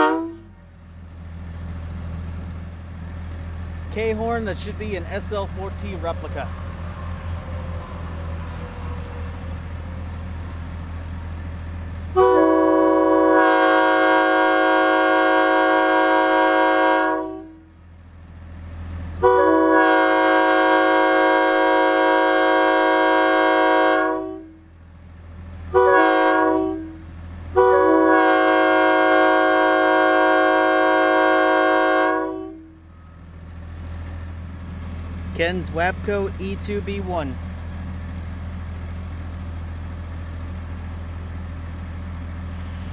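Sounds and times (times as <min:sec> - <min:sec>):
locomotive air horn chord: 0:00.0 - 0:00.6, 0:04.0 - 0:10.6, 0:12.1 - 0:17.8, 0:19.2 - 0:24.7, 0:25.7 - 0:33.2.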